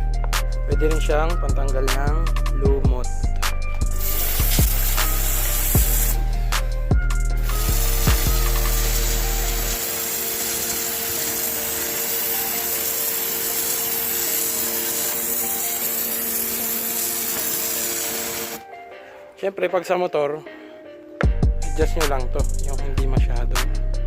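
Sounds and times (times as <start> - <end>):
pressure washer motor humming: 3.5 - 18.7
water jet hissing: 3.9 - 6.4, 7.4 - 18.6.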